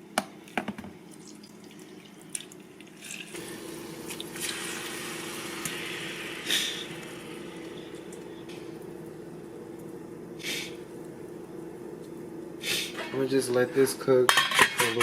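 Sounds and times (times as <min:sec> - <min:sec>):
kitchen tap running: 0:01.1 - 0:09.9
liquid dripping: 0:01.1 - 0:10.0.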